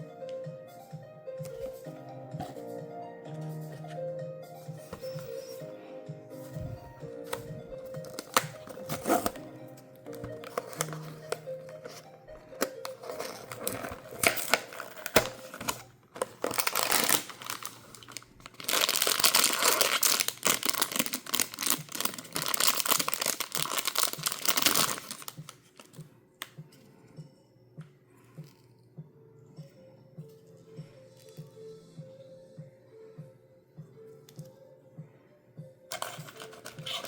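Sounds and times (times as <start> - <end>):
faint background music: 0.0 - 37.0
packaging clicks and rustles: 6.5 - 26.6, 35.9 - 37.0
wrapping crinkling and tearing: 7.9 - 9.4, 10.1 - 26.0, 35.9 - 37.0.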